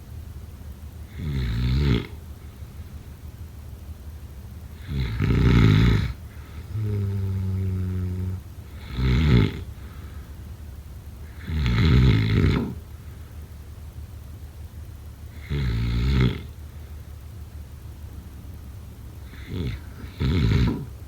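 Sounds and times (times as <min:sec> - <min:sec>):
person snoring: 0:01.1 - 0:02.2, 0:04.8 - 0:09.7, 0:11.3 - 0:12.8, 0:15.4 - 0:16.5, 0:19.2 - 0:21.0
humming out-breath: 0:04.7 - 0:13.8, 0:18.0 - 0:21.0.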